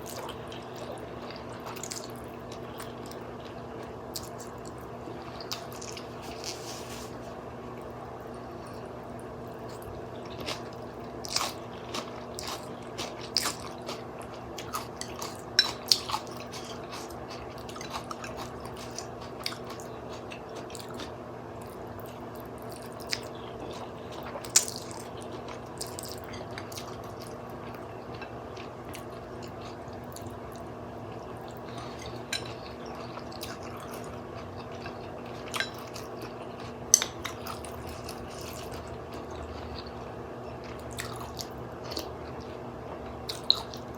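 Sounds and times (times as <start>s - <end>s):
steady low hum: 0.0s - 43.9s
wet chewing and smacking: 9.8s - 30.6s, 40.6s - 42.6s.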